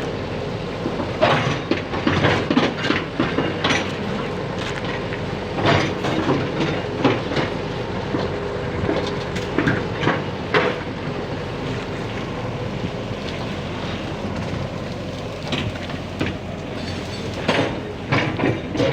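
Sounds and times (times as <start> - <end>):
excavator engine running: 0.0 - 18.9
metal clanks and knocks: 0.9 - 11.0, 15.4 - 18.9.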